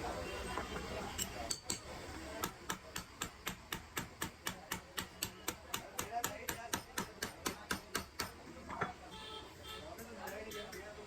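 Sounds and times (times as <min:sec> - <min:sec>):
sharp metallic clicks: 0:01.2 - 0:08.4.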